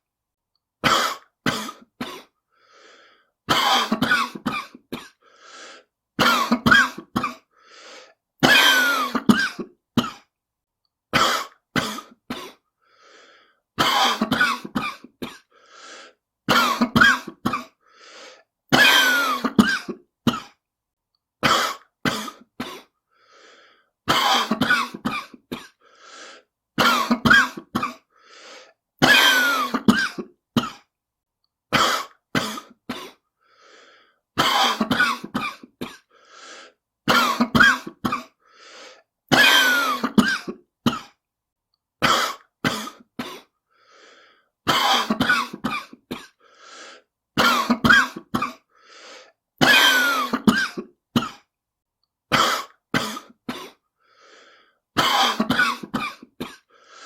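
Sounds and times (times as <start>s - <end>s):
person coughing: 0.8s - 2.4s, 3.5s - 5.3s, 6.2s - 7.5s, 8.4s - 10.3s, 11.1s - 12.7s, 13.8s - 15.6s, 16.5s - 17.8s, 18.7s - 20.6s, 21.4s - 23.0s, 24.1s - 25.8s, 26.8s - 28.1s, 29.0s - 30.9s, 31.7s - 33.2s, 34.4s - 36.2s, 37.1s - 38.4s, 39.3s - 41.2s, 42.0s - 43.6s, 44.7s - 46.4s, 47.4s - 48.7s, 49.6s - 51.5s, 52.3s - 53.8s, 55.0s - 56.8s.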